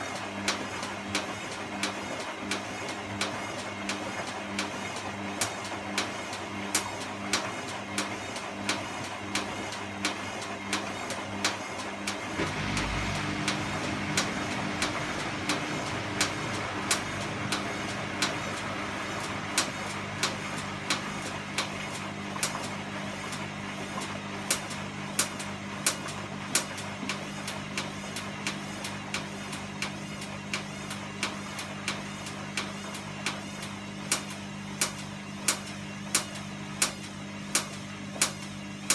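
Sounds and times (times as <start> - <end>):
vehicle engine running: 12.3 - 19.6.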